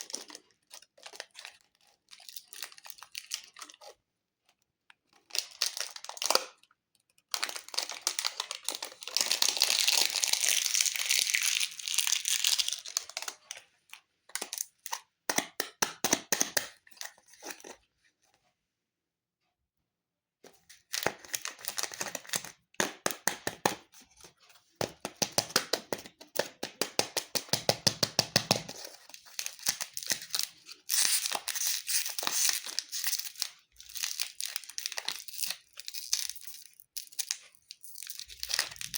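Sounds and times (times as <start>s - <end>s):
plastic wrappers crumpling: 0.0s - 4.0s, 5.2s - 15.0s, 20.7s - 22.6s, 28.5s - 38.9s.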